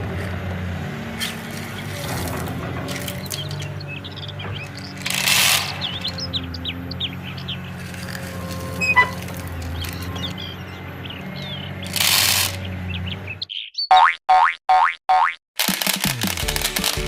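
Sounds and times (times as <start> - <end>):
small birds chirping: 1.2 - 14.1.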